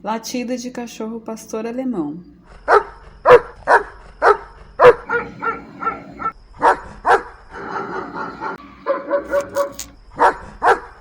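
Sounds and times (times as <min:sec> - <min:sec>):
dog barking: 0:02.7 - 0:11.0.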